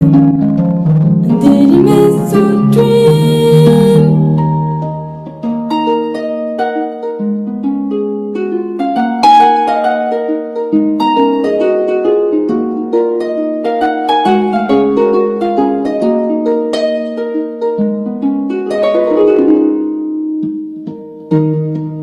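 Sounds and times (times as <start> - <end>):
plucked notes over low drone: 0.0 - 5.9.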